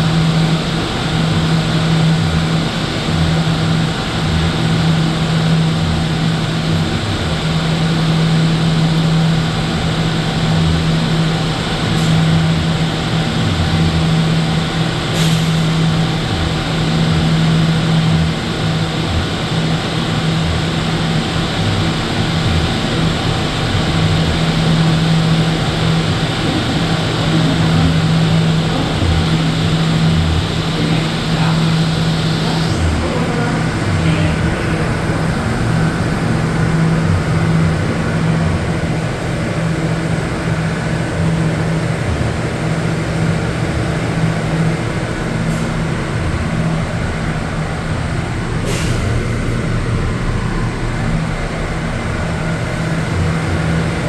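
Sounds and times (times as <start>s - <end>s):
strong low hum: 15.7s - 54.0s
blower air rushing: 24.1s - 54.0s.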